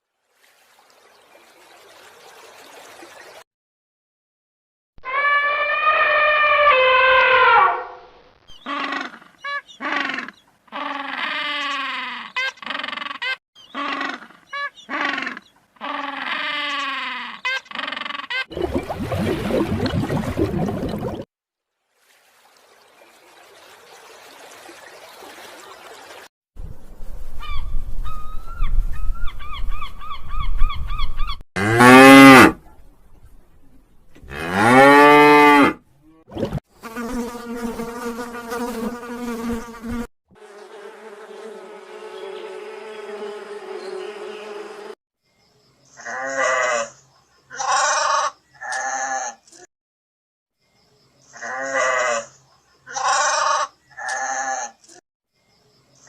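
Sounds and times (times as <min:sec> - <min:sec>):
long rising and falling animal calls: 0:05.0 - 0:07.9.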